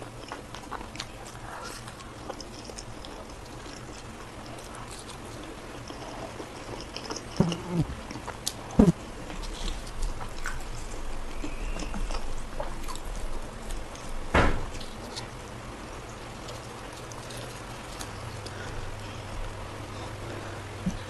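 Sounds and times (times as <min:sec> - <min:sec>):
chewing with wet mouth noises: 0:00.0 - 0:21.0
mouth smacks and gulps: 0:05.8 - 0:13.2, 0:20.3 - 0:21.0.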